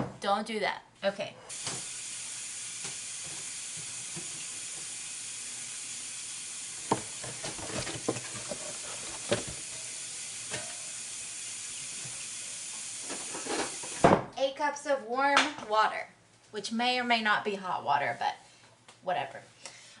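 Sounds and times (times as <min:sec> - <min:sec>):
kitchenware knocks and clatters: 0:06.9 - 0:09.6.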